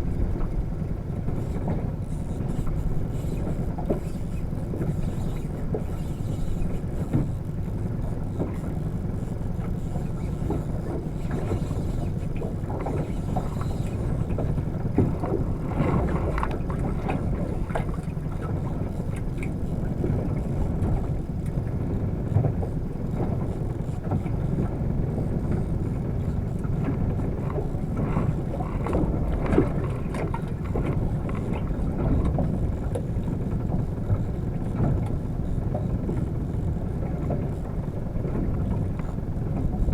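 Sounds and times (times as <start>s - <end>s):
boat engine low rumble: 0.0s - 39.9s.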